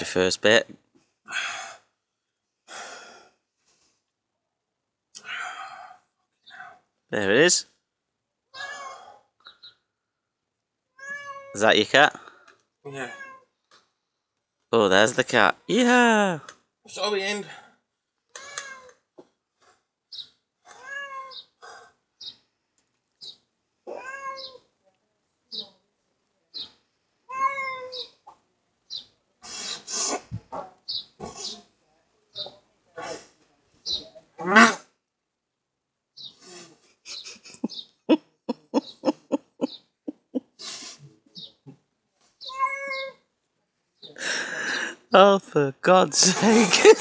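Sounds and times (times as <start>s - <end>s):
cat meowing: 8.6s - 9.1s, 11.0s - 11.6s, 13.0s - 13.5s, 20.7s - 21.5s, 23.9s - 24.7s, 27.3s - 28.1s, 42.4s - 43.2s
person laughing: 36.9s - 40.6s, 46.2s - 47.0s.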